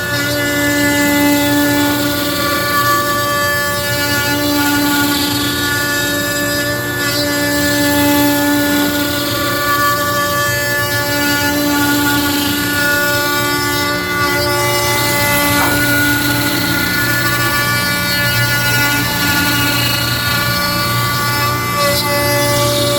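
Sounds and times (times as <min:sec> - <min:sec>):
router cutting wood: 0:00.0 - 0:22.9
router motor whining: 0:10.8 - 0:22.9.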